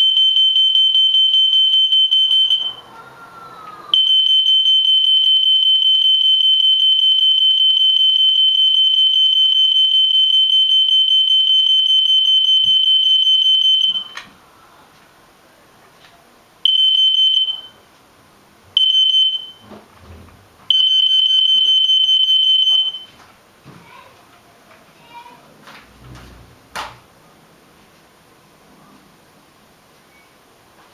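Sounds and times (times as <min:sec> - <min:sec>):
high-pitched electronic alarm tone: 0:00.0 - 0:02.9, 0:03.9 - 0:14.2, 0:16.7 - 0:17.8, 0:18.8 - 0:19.6, 0:20.7 - 0:23.1.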